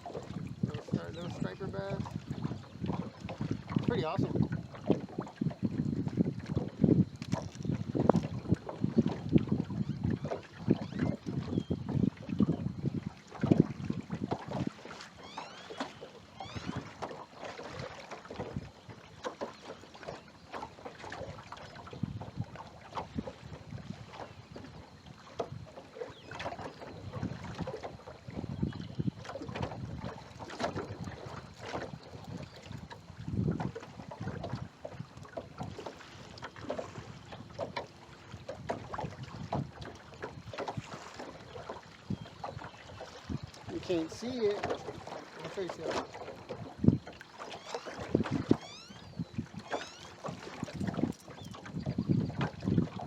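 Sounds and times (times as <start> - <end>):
water lapping against boat hull: 0.0 - 53.0.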